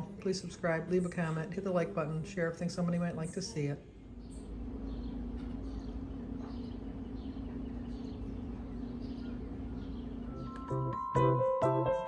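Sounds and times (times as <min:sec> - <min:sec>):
low hum: 0:04.0 - 0:11.4.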